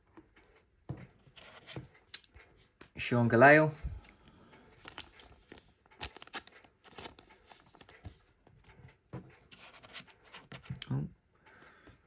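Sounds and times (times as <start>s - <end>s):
cards clicking: 4.8s - 8.1s
rustle of cards and wrapper: 4.8s - 8.3s.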